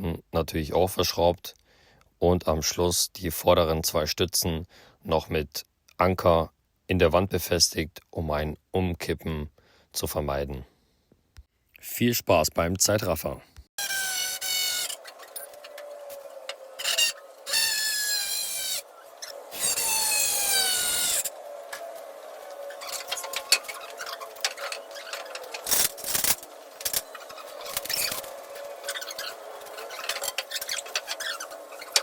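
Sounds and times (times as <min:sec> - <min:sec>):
power drill-driver whining: 0:13.8 - 0:21.9, 0:22.5 - 0:32.0.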